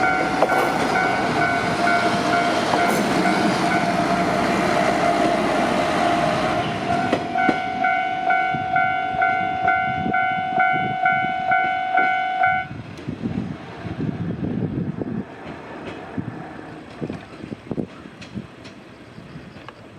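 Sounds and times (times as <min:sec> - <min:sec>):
level-crossing alarm clanging: 0:00.0 - 0:04.3
passing train: 0:00.0 - 0:19.9.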